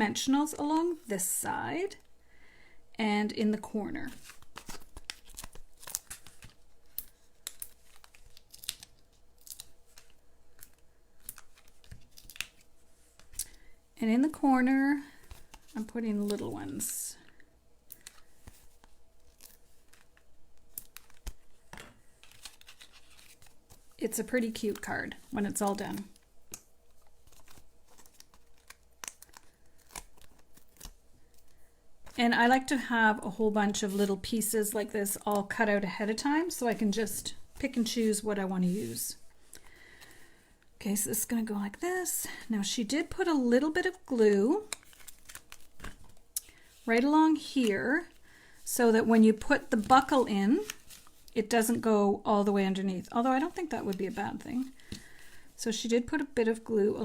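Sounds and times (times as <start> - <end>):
paper crinkling and ticking: 4.1 - 13.6, 15.0 - 32.2, 43.4 - 48.4, 49.0 - 51.9.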